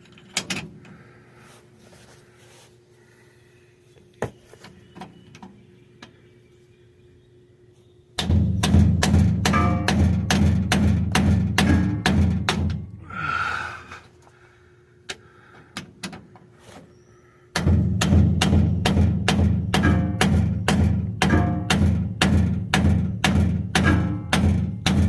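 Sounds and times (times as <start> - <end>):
hammer blows on metal: 17.6 - 25.0.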